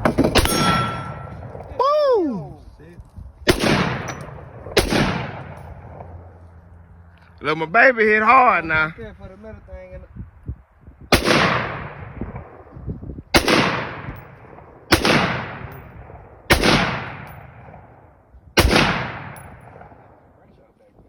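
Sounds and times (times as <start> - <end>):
gunshots with echo: 3.5 - 6.3, 11.1 - 12.6, 13.3 - 18.0, 18.6 - 20.0.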